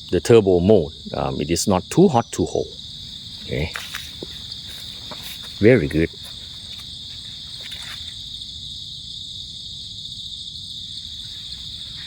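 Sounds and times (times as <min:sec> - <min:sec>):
crickets chirring: 0:00.0 - 0:12.0.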